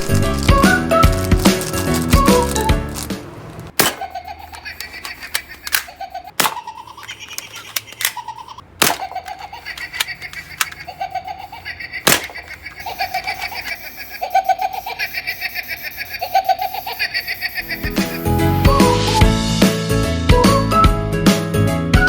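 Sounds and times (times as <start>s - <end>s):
toy gun firing pops: 3.8s - 6.8s, 8.8s - 10.8s, 12.1s - 12.5s.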